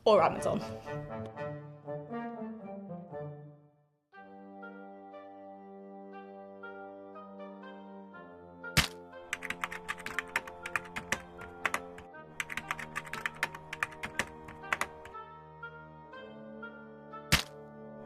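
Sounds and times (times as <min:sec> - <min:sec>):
background music with held chords: 0:00.0 - 0:18.0
rapid uneven clicks: 0:08.8 - 0:15.2.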